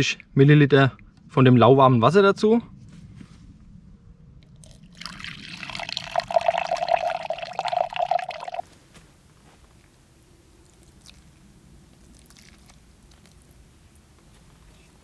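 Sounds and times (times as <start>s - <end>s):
water pouring into flour: 4.6s - 8.6s, 12.0s - 13.6s.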